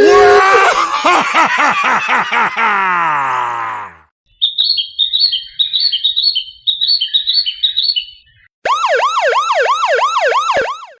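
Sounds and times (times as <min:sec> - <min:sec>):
recorded birdsong chirps: 0:04.3 - 0:08.6
electronic siren tone: 0:08.6 - 0:11.0.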